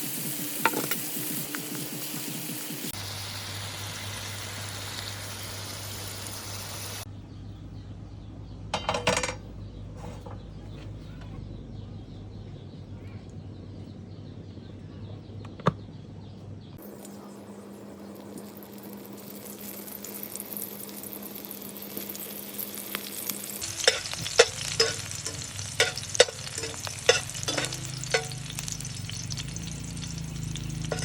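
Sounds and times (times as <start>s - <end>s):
kitchen utensils clattering: 8.8s - 10.5s, 23.6s - 31.0s.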